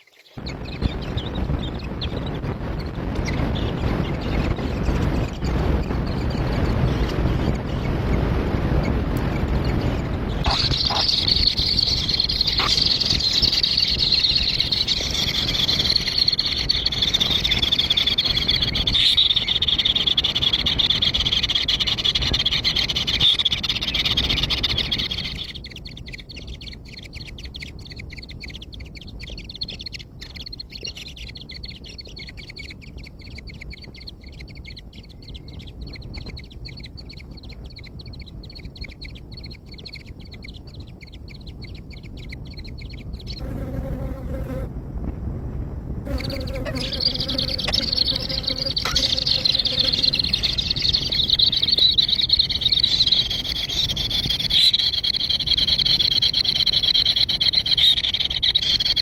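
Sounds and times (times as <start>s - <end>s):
birds chirping chorus: 0.0s - 44.7s, 46.1s - 59.0s
fast-pulsing high trilling: 46.1s - 59.0s.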